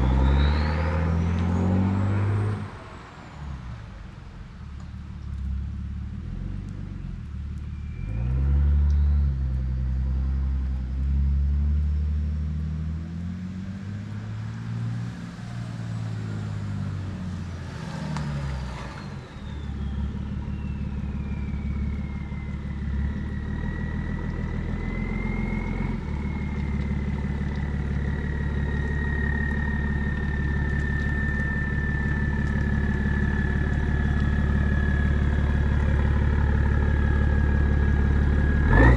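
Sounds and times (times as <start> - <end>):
diesel engine revving: 0.0 - 4.1, 5.4 - 38.9
turbo whistle: 19.4 - 26.5.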